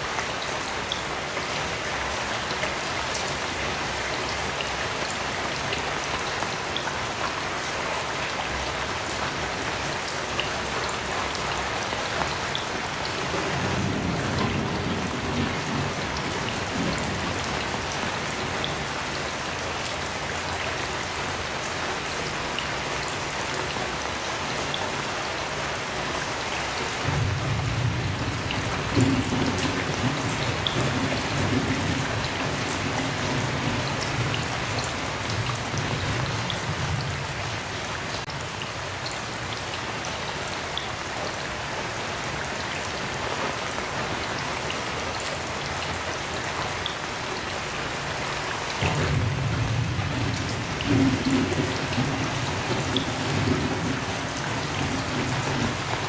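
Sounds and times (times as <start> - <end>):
heavy rain falling: 0.0 - 56.0
low roll of thunder: 13.2 - 19.0, 27.1 - 38.5, 48.8 - 56.0.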